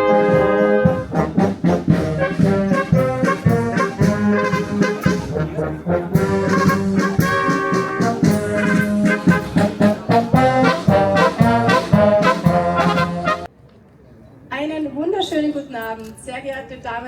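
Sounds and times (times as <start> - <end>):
trumpets and trombones playing: 0.0 - 13.5.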